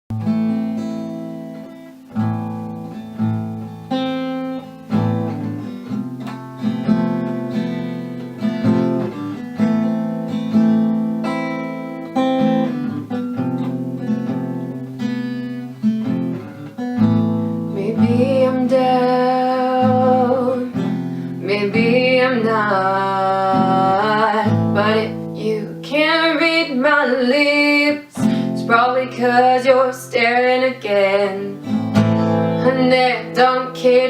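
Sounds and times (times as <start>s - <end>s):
acoustic guitar picked chords: 0.1s - 34.0s.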